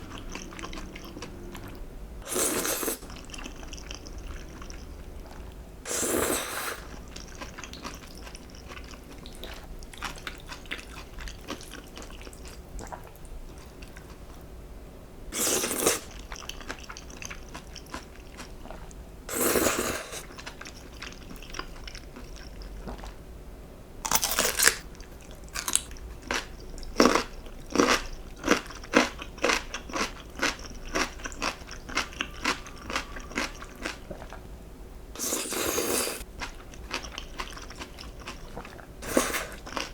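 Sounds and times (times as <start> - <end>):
crisp crunching chews: 24.1 - 34.4, 35.2 - 39.9.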